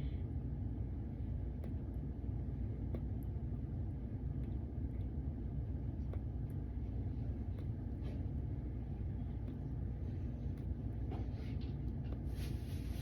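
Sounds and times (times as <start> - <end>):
faint hum: 0.0 - 13.0
soft clicks: 2.8 - 3.4, 7.4 - 7.8, 10.5 - 11.0.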